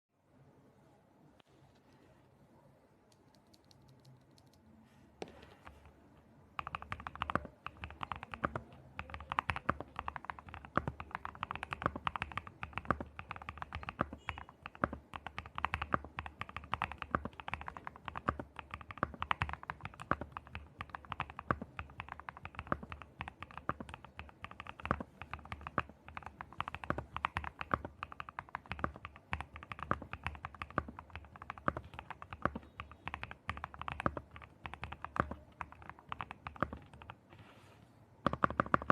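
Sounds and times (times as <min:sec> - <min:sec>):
mechanical keyboard typing: 0:03.1 - 0:04.6, 0:06.6 - 0:37.2, 0:38.2 - 0:38.9.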